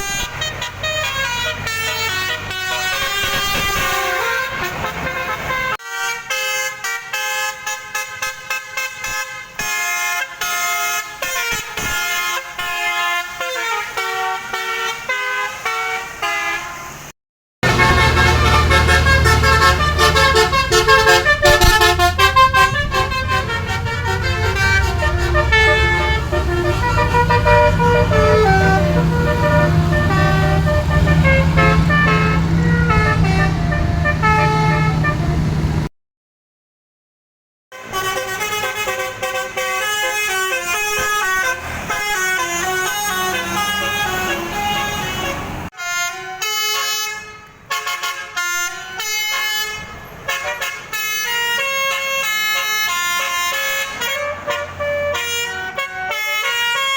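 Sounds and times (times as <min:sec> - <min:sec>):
bus trumpet horns playing melodies: 0:00.0 - 0:35.9, 0:37.7 - 0:56.9
low engine hum: 0:17.6 - 0:35.9.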